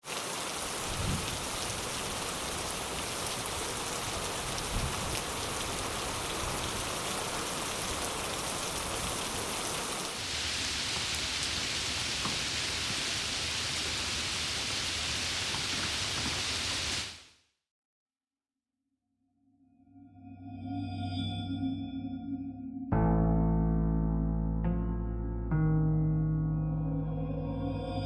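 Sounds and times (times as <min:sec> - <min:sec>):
heavy rain pouring: 0:00.0 - 0:17.2.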